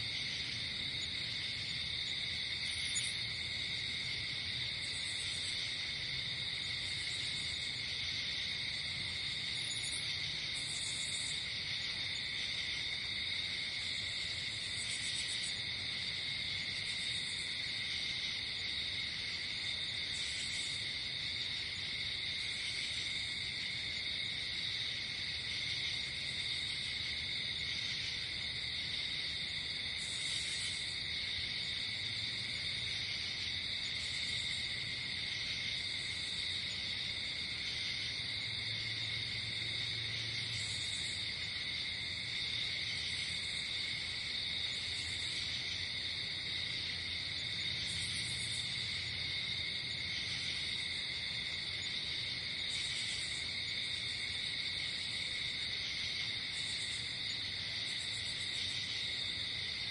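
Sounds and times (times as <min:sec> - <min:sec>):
crickets trilling: 0:00.0 - 0:59.9
higher cricket chirp: 0:00.0 - 0:59.9.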